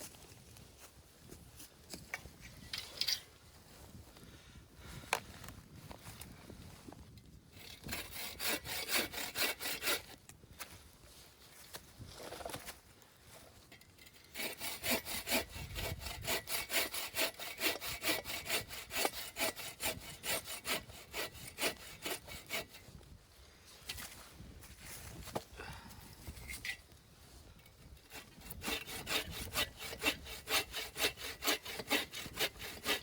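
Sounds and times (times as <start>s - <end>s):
hand saw cutting wood: 7.6s - 10.2s, 14.0s - 23.0s, 28.0s - 33.0s.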